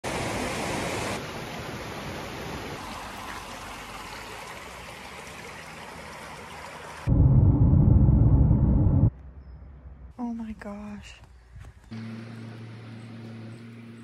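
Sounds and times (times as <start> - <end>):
stream water rushing: 0.0 - 7.1.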